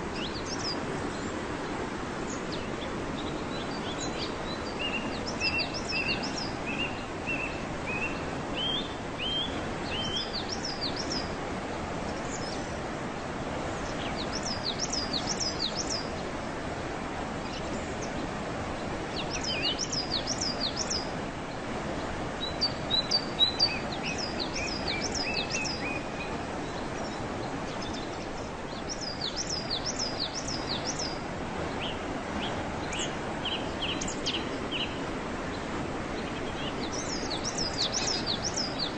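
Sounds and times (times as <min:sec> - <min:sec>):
waterfall rushing: 0:00.0 - 0:38.9
small birds chirping: 0:02.3 - 0:11.3, 0:13.6 - 0:16.3, 0:19.1 - 0:21.1, 0:22.4 - 0:38.9.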